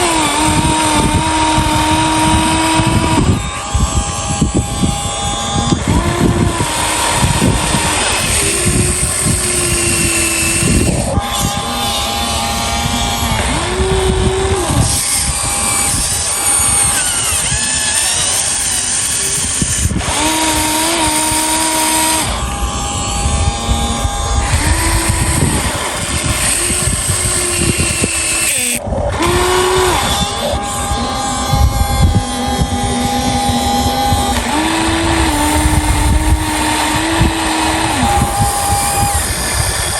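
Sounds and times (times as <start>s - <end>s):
small electric motors whining: 0.0s - 39.9s
low rumbling and knocking: 19.5s - 39.9s.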